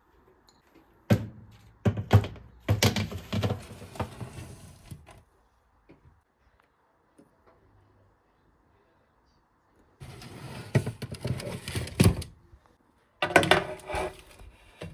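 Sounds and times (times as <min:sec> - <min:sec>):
hard objects knocking and clattering: 0:01.1 - 0:04.6.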